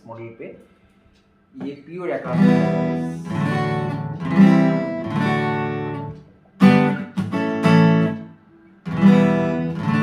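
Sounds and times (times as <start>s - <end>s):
acoustic guitar strummed chords: 2.2s - 10.0s.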